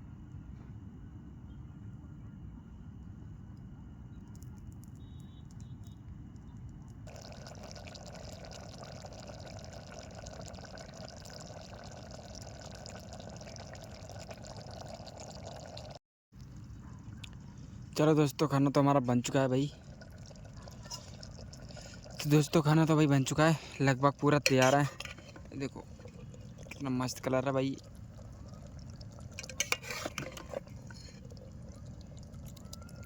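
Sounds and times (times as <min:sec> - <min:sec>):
pot of pasta bubbling: 0:07.0 - 0:33.0.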